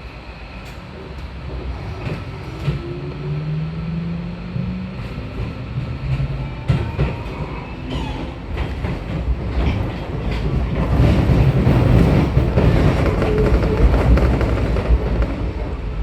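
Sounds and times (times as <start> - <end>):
train wheel and track rumble: 0.0 - 16.0.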